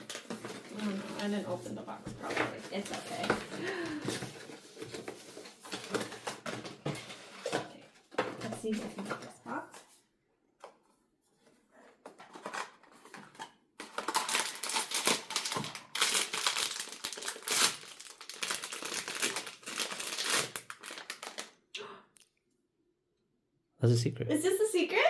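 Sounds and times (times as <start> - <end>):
packaging wrapper crinkling and tearing: 0.0 - 1.4, 12.2 - 21.6.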